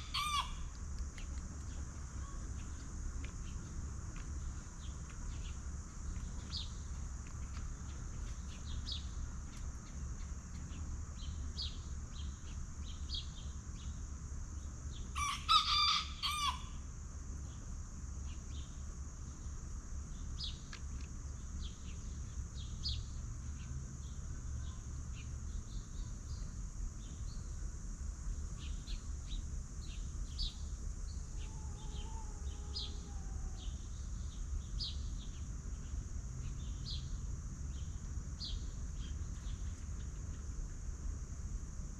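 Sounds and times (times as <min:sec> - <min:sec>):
rooster crowing: 0:00.0 - 0:00.7, 0:15.1 - 0:16.7, 0:31.3 - 0:33.8
steady high-pitched hiss: 0:00.0 - 0:41.9.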